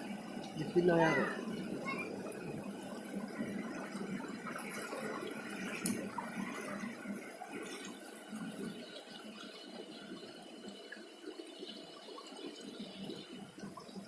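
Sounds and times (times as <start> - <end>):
floodwater rushing: 0.0 - 10.0.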